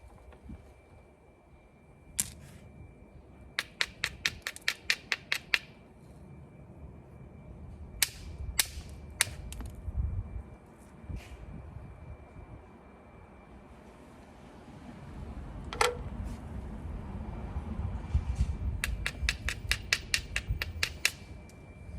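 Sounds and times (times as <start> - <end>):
stone knapping clicks: 3.6 - 5.7, 18.8 - 21.2.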